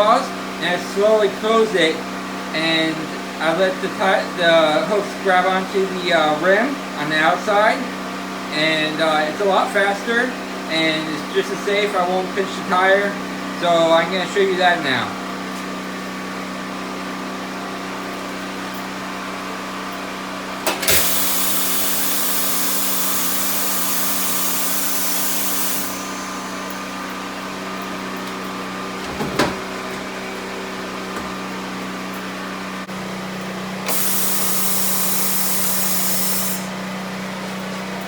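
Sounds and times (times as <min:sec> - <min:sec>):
pneumatic clamp clack: 0:20.6 - 0:24.0, 0:33.8 - 0:36.6
steady hum: 0:20.7 - 0:33.0
compressed air hissing: 0:20.9 - 0:27.1, 0:33.9 - 0:36.8.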